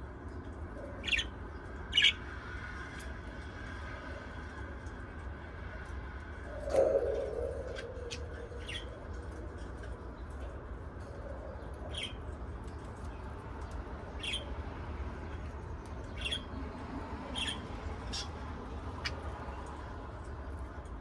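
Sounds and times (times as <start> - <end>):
parrots squawking and chirping: 1.0 - 1.3, 1.9 - 2.2, 7.2 - 9.0, 11.9 - 12.2, 14.2 - 14.6, 16.0 - 16.6, 17.2 - 19.8.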